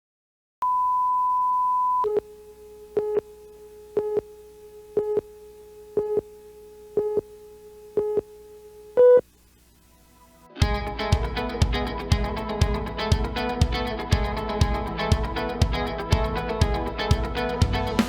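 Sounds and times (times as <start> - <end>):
electronic beeps: 0.6 - 2.2, 9.0 - 9.2.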